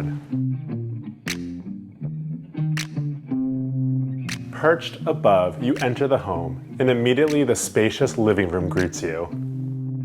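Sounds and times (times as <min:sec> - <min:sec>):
plucked guitar music: 0:00.0 - 0:10.0.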